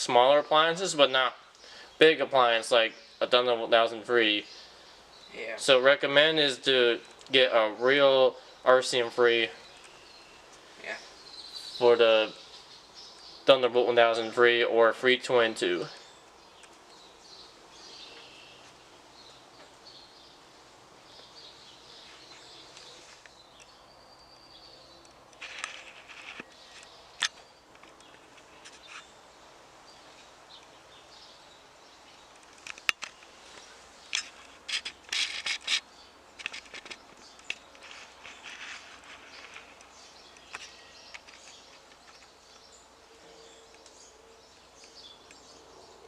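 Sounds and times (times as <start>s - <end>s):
faint birdsong: 0.0s - 46.0s
sharp clicks and knocks: 32.3s - 33.3s.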